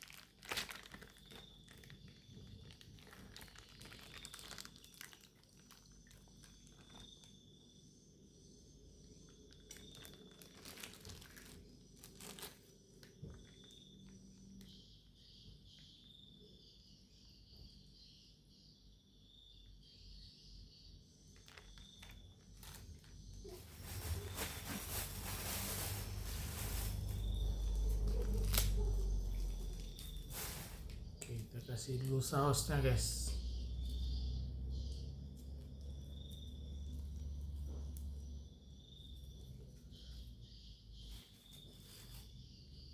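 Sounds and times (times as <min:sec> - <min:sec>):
plastic packaging crinkling: 0:00.0 - 0:07.4, 0:09.3 - 0:14.8, 0:21.3 - 0:38.0
insects trilling: 0:00.0 - 0:42.9.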